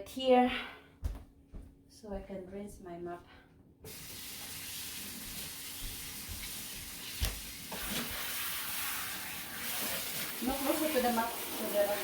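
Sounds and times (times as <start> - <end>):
mop rinsed under water: 3.9 - 12.0
water running from a tap: 3.9 - 12.0.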